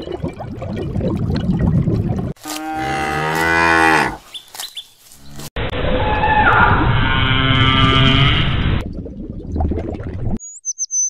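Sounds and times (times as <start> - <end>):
cow mooing: 2.5 - 4.2, 7.2 - 8.7.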